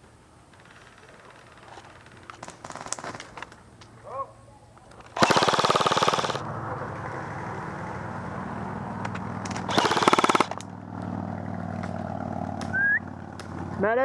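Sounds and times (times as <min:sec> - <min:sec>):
electric rifle full-auto bursts: 0:05.2 - 0:06.4, 0:09.6 - 0:10.6.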